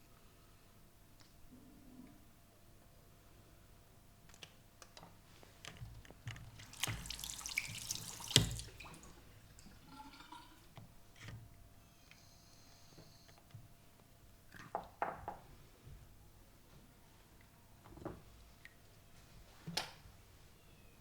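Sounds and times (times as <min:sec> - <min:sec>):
liquid splashing: 0:06.5 - 0:10.7.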